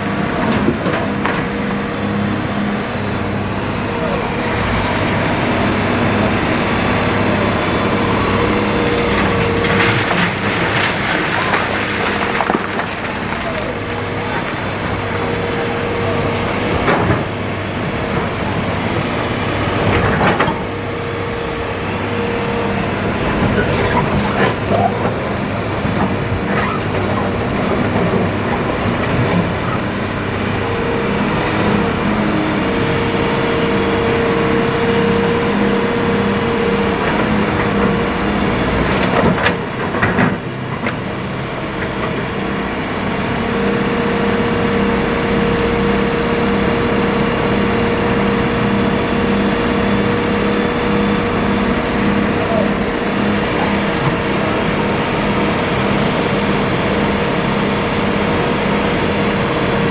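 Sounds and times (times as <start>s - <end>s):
excavator diesel engine running: 0.0s - 59.9s
hydraulic whine: 1.0s - 11.0s, 19.8s - 39.4s.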